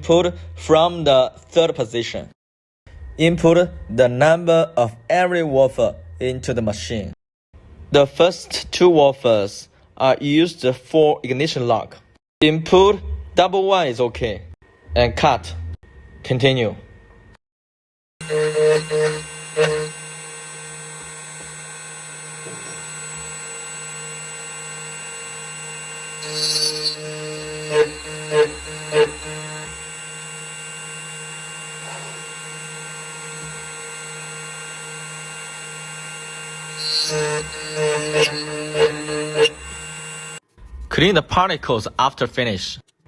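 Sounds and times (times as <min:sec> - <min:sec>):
key cutting machine cutting: 0:18.2 - 0:40.4.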